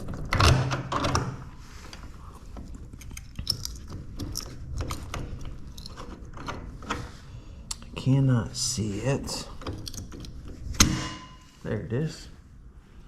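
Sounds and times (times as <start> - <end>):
metallic clicks of bolts and tools: 2.9 - 6.6, 9.6 - 11.2.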